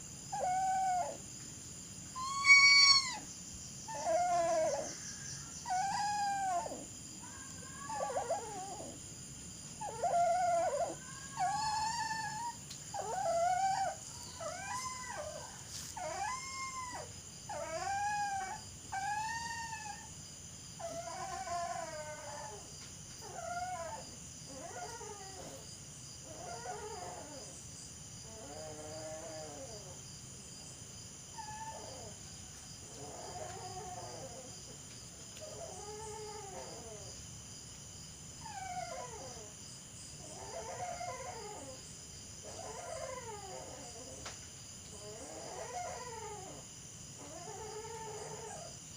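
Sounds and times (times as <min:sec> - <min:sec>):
dog howling and whining: 0:00.3 - 0:01.2, 0:02.2 - 0:03.3, 0:03.9 - 0:09.0, 0:09.8 - 0:20.1, 0:20.8 - 0:27.6, 0:28.2 - 0:30.0, 0:31.3 - 0:32.2, 0:32.8 - 0:34.8, 0:35.4 - 0:37.1, 0:38.4 - 0:39.6, 0:40.2 - 0:41.8, 0:42.4 - 0:44.3, 0:44.9 - 0:46.6, 0:47.2 - 0:48.7.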